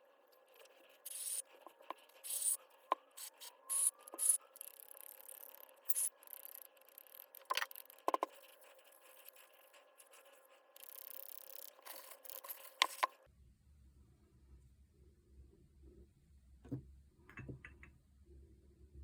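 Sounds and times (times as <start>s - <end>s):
faint low hum: 0.0s - 19.0s
small clicks and knocks: 3.7s - 8.4s, 16.6s - 18.0s.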